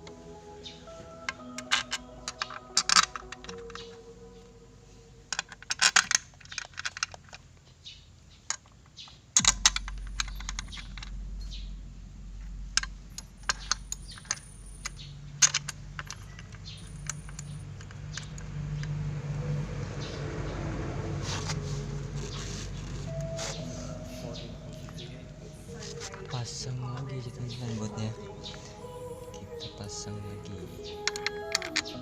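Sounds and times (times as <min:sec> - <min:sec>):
low steady hum: 0:00.0 - 0:07.3, 0:09.4 - 0:32.0
metallic clicks of tools: 0:01.3 - 0:04.0, 0:05.3 - 0:07.4, 0:12.7 - 0:19.0, 0:31.0 - 0:32.0.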